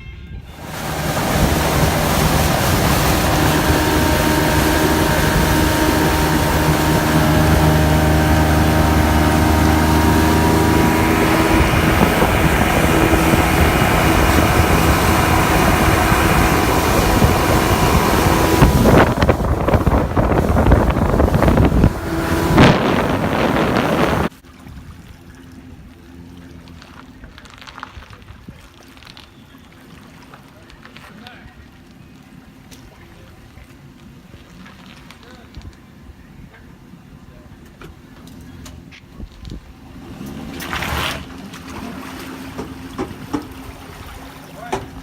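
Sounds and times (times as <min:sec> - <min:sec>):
wind noise on microphone: 0:00.0 - 0:24.3
motorboat engine running: 0:00.4 - 0:45.0.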